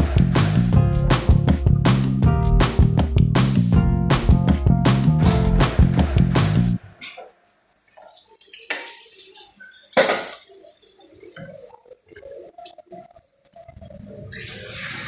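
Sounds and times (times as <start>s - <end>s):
utensils and pots clinking: 9.9s - 10.6s.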